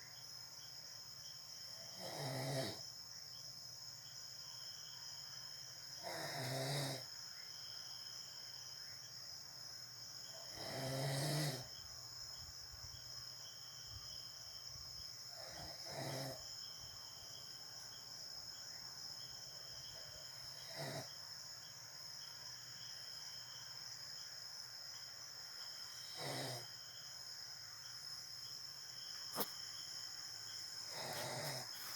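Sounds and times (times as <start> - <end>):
person snoring loudly: 1.8 - 2.8, 6.0 - 7.1, 10.5 - 11.7, 15.4 - 16.4, 26.0 - 26.7, 30.9 - 31.8.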